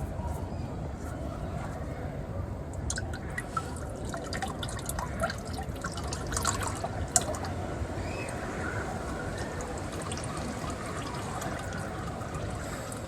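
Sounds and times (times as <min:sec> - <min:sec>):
oil dripping and trickling: 0:02.7 - 0:13.0.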